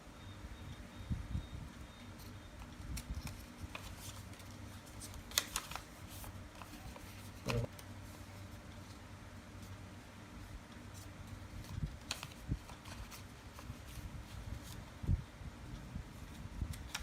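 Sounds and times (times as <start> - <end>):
steady low hum: 0.0 - 17.0
paper crinkling: 2.2 - 9.0, 10.9 - 15.0.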